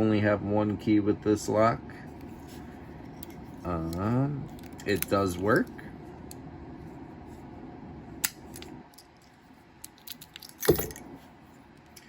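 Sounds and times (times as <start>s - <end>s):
padlock and key clicking and rattling: 8.6s - 11.0s.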